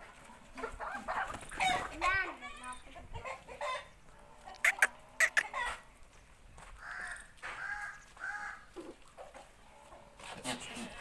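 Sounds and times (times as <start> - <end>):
chickens drawn-out calls: 0.1 - 6.0, 6.8 - 11.0
chickens squawking: 0.5 - 2.6, 3.2 - 5.9, 6.8 - 9.9.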